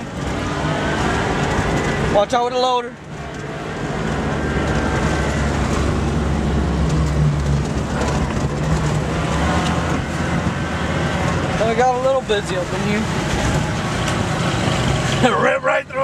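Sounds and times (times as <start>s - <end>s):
vehicle engine running: 0.0s - 16.0s
tyre and rattle noise: 3.0s - 10.6s.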